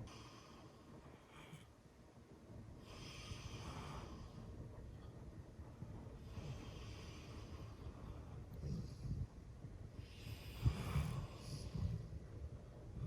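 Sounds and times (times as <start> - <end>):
dog snoring: 10.1 - 12.0.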